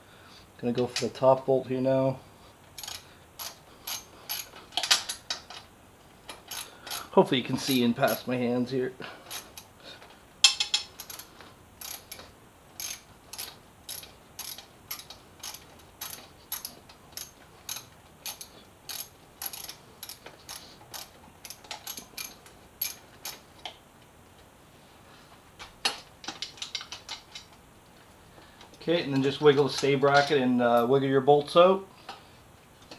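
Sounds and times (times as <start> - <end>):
ratchet wrench clicking: 2.8 - 5.6, 6.3 - 7.1, 10.4 - 23.4.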